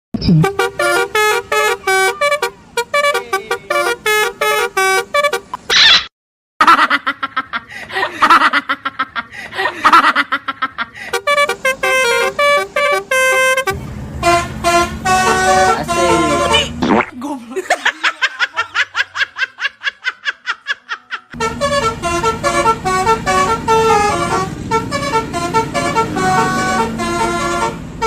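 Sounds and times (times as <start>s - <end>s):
multi-tone bus horn tune: 0.2s - 5.6s, 11.0s - 16.8s, 21.3s - 28.0s.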